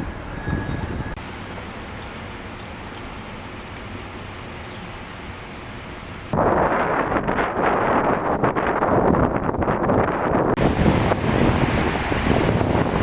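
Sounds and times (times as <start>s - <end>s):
wind: 0.0s - 13.0s
rain and wind hitting microphone: 6.1s - 13.0s
steady rain: 10.6s - 13.0s.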